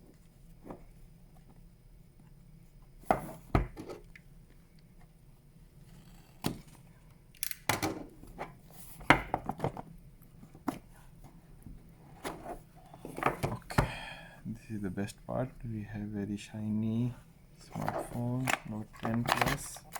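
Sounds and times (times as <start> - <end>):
packaging rustling: 17.6 - 19.9.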